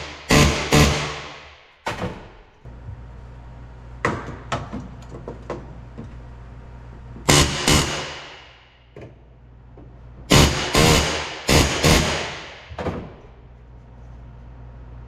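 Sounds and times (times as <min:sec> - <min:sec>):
rivet gun hammering: 0:00.0 - 0:01.7, 0:07.3 - 0:08.7, 0:10.3 - 0:13.1
steady low hum: 0:00.0 - 0:15.0.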